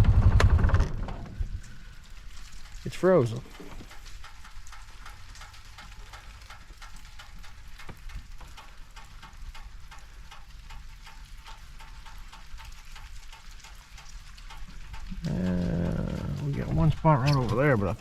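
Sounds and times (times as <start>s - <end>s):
steady low rumble: 0.0s - 3.7s, 14.9s - 18.0s
water and ice dripping: 1.3s - 18.0s.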